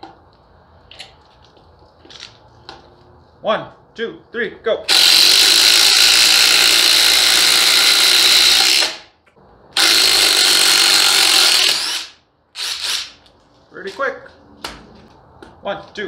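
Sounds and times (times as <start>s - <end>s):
impact driver hammering screws into wood: 4.9s - 9.1s.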